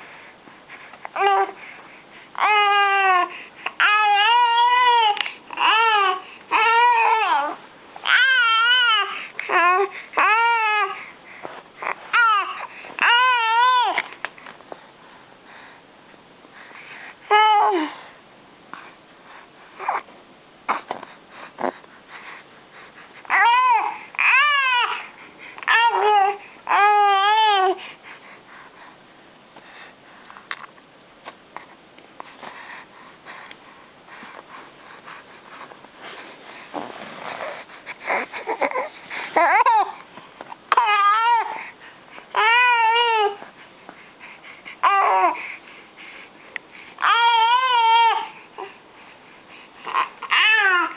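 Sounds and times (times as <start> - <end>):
baby wailing and babbling: 1.2 - 1.6, 2.4 - 11.0, 11.8 - 14.0, 17.3 - 17.9, 23.3 - 27.8, 38.1 - 40.0, 40.7 - 41.7, 42.3 - 43.4, 44.8 - 45.4, 47.0 - 48.4, 49.9 - 50.9.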